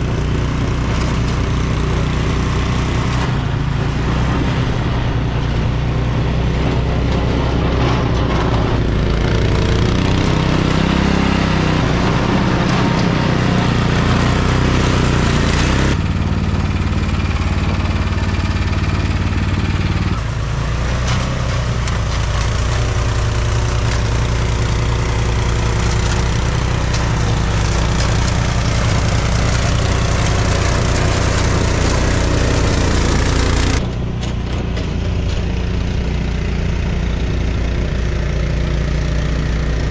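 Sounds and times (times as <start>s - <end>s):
engine running steadily: 0.0s - 39.9s.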